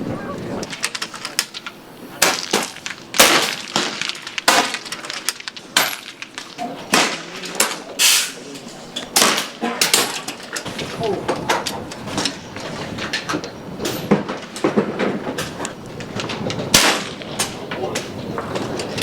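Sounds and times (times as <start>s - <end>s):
air rifles firing: 2.2s - 8.4s, 9.1s - 10.8s, 16.7s - 17.6s.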